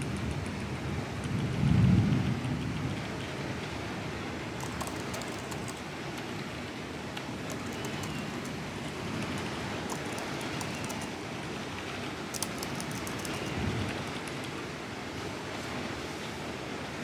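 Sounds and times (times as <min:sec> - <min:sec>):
faint keyboard typing: 0:04.4 - 0:14.6.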